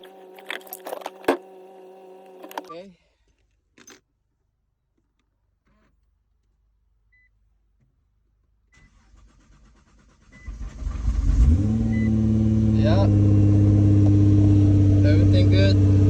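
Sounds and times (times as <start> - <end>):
car engine firing: 8.9 - 16.0.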